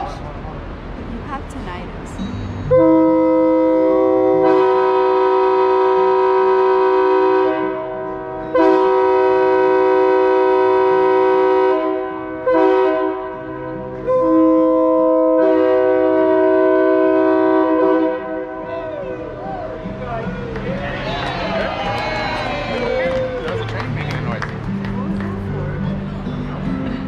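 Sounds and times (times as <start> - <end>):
locomotive air horn blasts: 2.7 - 18.7.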